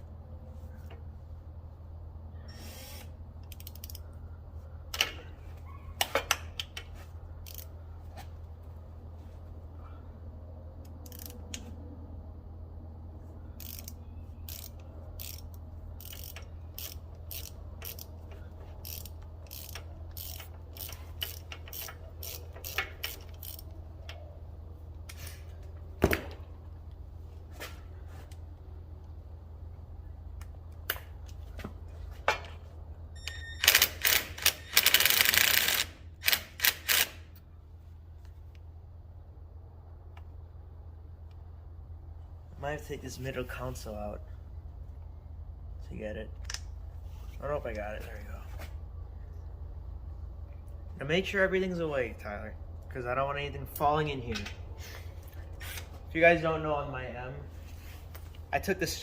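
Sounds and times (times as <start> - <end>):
steady low hum: 0.0 - 59.0
ratchet wrench clicking: 2.5 - 4.1, 7.4 - 7.7, 10.8 - 11.7, 13.6 - 24.2, 33.6 - 37.3.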